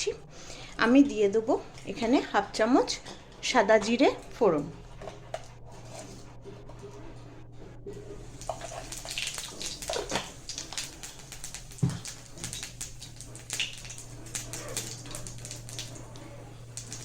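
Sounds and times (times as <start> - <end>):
seeds sizzling in hot oil: 8.2 - 17.0.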